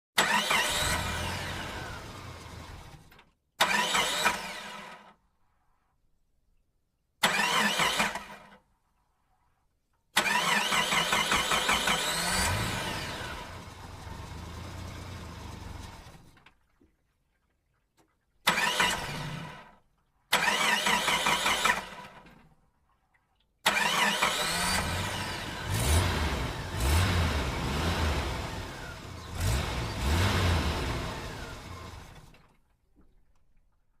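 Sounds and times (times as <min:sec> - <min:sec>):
car starter cranking: 0:00.2 - 0:05.1, 0:07.2 - 0:08.6, 0:10.2 - 0:16.4, 0:18.5 - 0:19.7, 0:20.3 - 0:22.3, 0:23.7 - 0:27.4
car engine revving: 0:10.4 - 0:16.2, 0:23.8 - 0:32.3.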